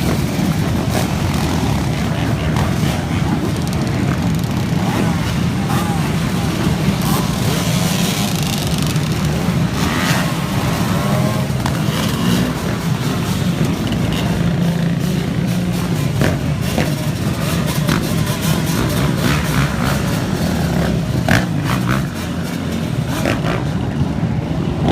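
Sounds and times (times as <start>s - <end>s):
motorcycle engines running: 0.0s - 24.9s
people's voices: 0.0s - 24.9s.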